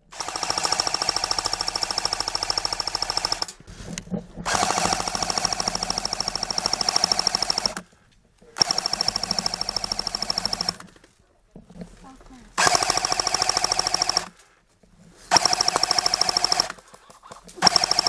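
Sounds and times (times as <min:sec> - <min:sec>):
airsoft gun firing full-auto: 0:00.1 - 0:03.6, 0:04.5 - 0:07.8, 0:08.6 - 0:10.9, 0:12.6 - 0:14.3, 0:15.3 - 0:17.0, 0:17.6 - 0:18.0.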